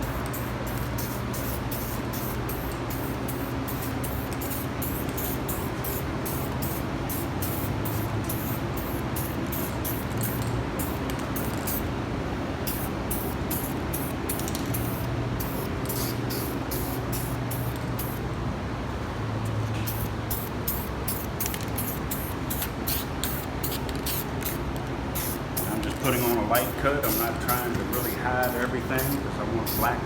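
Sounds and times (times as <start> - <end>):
steady low hum: 0.0 - 30.0
aerosol spray can hissing: 25.2 - 30.0.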